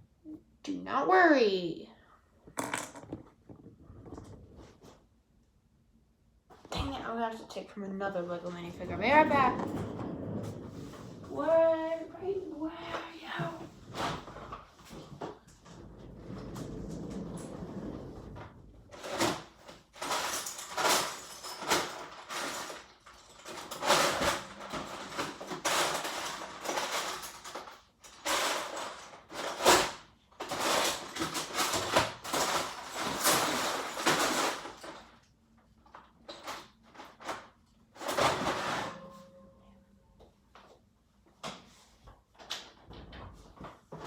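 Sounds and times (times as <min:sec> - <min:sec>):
rummaging clatter and rustling: 0:12.9 - 0:35.3, 0:35.9 - 0:39.4.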